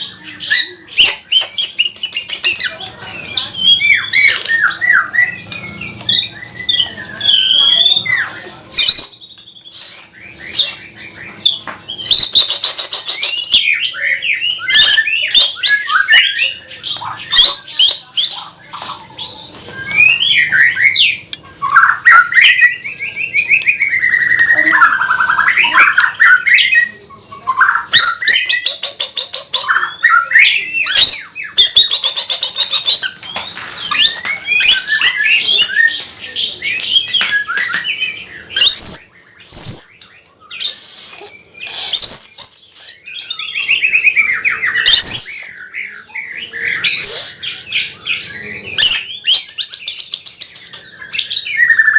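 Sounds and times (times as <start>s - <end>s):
harsh rattling bird chatters: 0.0s - 39.9s
songbird whistling song: 0.0s - 51.9s.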